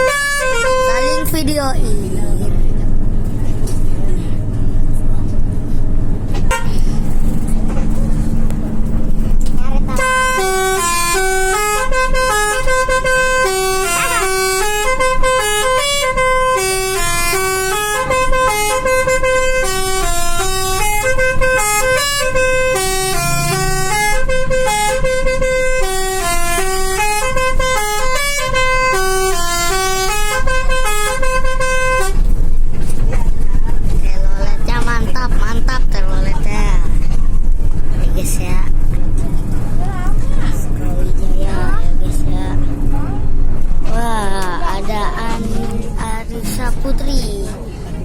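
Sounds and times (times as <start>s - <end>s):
air horns playing a tune: 0.0s - 1.3s, 6.4s - 6.9s, 9.9s - 32.3s.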